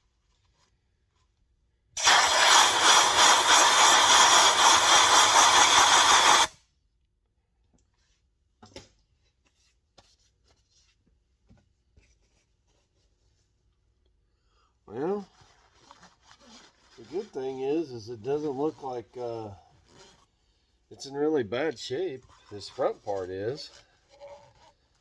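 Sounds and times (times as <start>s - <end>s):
compressed air hissing: 2.0s - 6.5s.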